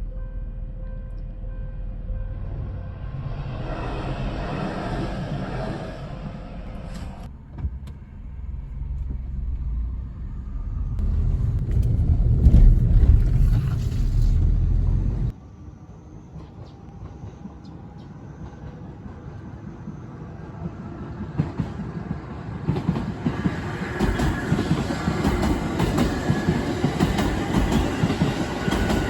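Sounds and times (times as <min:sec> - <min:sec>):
vehicle rumble: 0:01.1 - 0:15.4.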